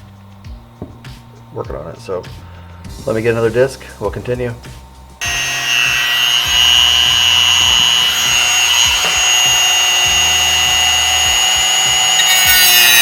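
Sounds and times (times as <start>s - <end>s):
rotary tool cutting metal: 5.2s - 13.0s.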